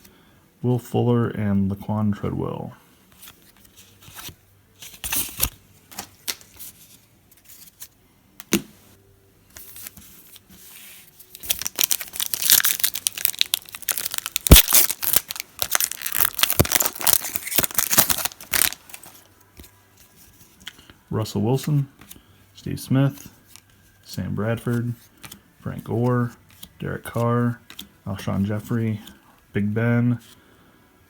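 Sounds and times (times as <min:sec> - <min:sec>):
wrapper tearing and crinkling: 0:11.3 - 0:19.3.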